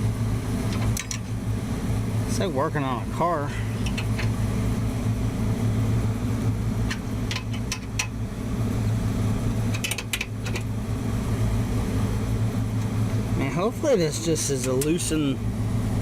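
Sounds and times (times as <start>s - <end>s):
air conditioning equipment humming: 0.0s - 16.0s
wrench clicking and tapping metal: 6.9s - 8.2s, 9.7s - 10.7s.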